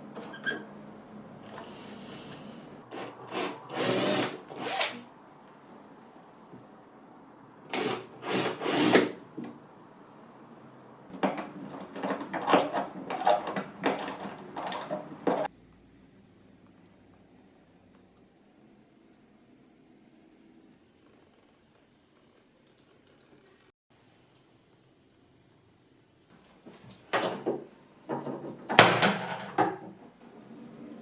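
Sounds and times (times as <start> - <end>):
power tool on wood: 1.5 - 5.0, 7.7 - 9.2.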